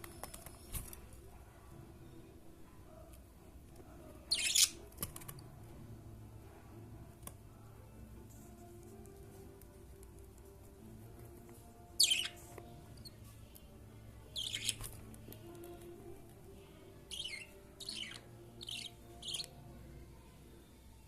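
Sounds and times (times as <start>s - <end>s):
budgerigar chirping: 4.3s - 4.8s, 12.0s - 12.4s, 14.3s - 14.8s, 17.1s - 19.5s.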